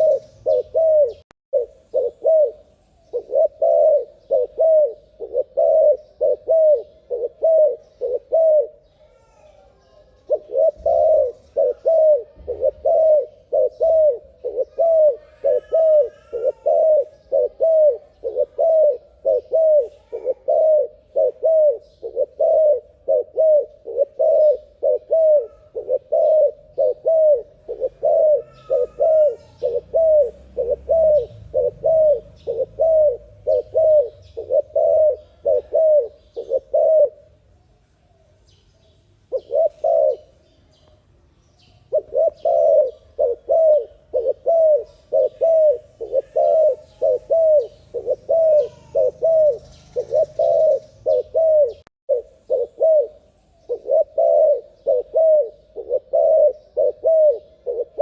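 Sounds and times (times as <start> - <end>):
dove cooing fast: 0.0 - 8.9, 10.2 - 37.4, 39.3 - 40.3, 41.9 - 58.0
faint small bird chirps: 37.5 - 58.0.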